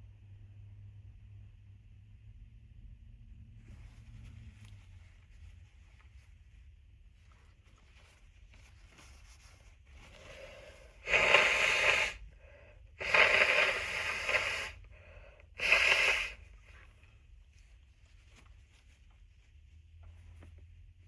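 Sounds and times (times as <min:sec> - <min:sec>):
faint breath: 0:09.9 - 0:17.1
person blowing nose: 0:10.0 - 0:16.6.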